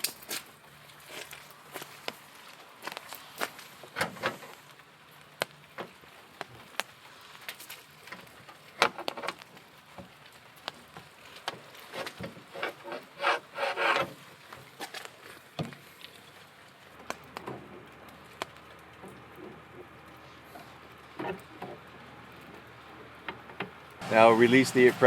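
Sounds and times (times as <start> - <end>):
tool scraping door trim: 12.0 - 14.2.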